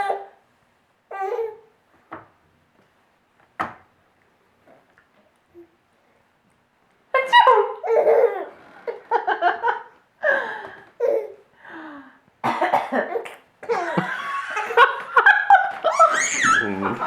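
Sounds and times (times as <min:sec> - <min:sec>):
baby laughing: 0:07.3 - 0:09.1, 0:13.0 - 0:17.0.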